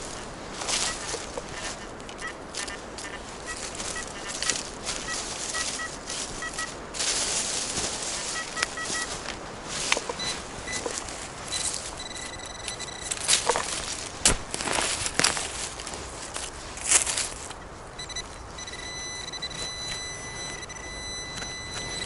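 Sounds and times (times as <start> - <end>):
footsteps on leaf litter: 0.0 - 17.6
rustling: 0.0 - 22.0
metal detector beeps: 0.7 - 13.9, 18.0 - 22.0.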